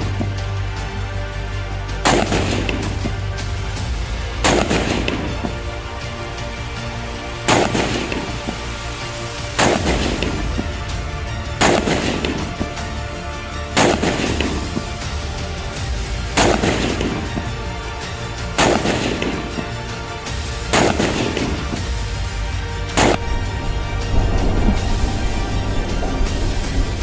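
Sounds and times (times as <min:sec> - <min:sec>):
music: 0:00.0 - 0:27.0
rifle shots with echo: 0:02.0 - 0:03.2, 0:04.4 - 0:05.6, 0:07.5 - 0:08.7, 0:09.6 - 0:10.7, 0:11.5 - 0:12.9, 0:13.7 - 0:15.2, 0:16.3 - 0:17.6, 0:18.5 - 0:20.0, 0:20.6 - 0:21.9, 0:22.9 - 0:23.2.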